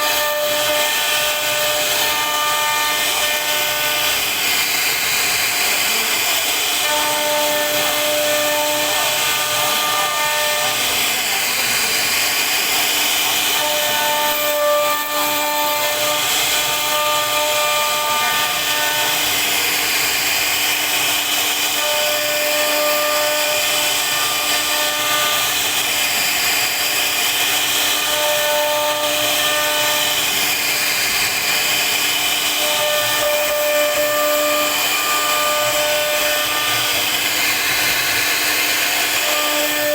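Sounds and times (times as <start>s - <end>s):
router spindle cutting wood: 0.0s - 39.9s.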